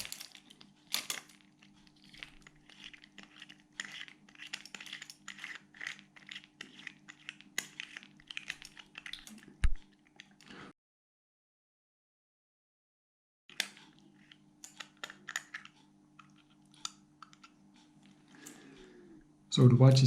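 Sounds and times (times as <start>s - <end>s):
small metallic clicks and scrapes: 0.0s - 10.5s, 13.5s - 18.6s.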